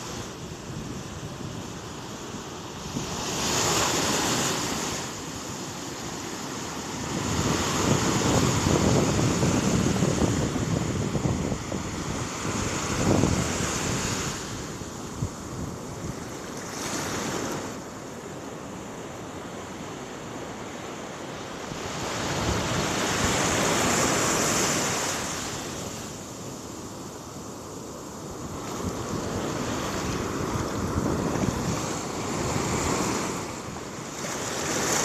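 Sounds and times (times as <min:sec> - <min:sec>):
ocean surf breaking: 0:01.6 - 0:19.4, 0:20.2 - 0:35.0
wind buffeting microphone: 0:06.9 - 0:16.4, 0:28.4 - 0:33.6.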